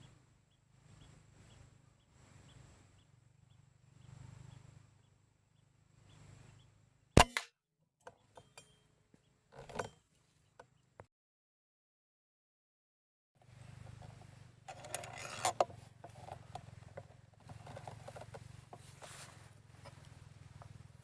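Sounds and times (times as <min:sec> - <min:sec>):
air rifle shot: 0:07.2 - 0:07.5.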